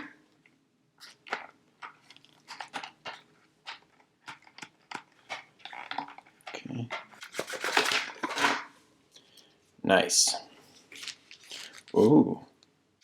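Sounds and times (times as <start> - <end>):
packaging crackling: 1.0 - 8.7, 10.9 - 12.1.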